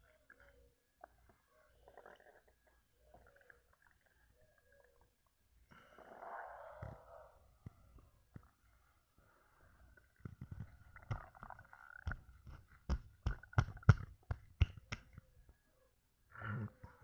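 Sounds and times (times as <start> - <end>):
stomach gurgling: 0.0 - 15.3, 16.3 - 17.0
low stomach rumble: 9.7 - 14.3, 16.4 - 17.0.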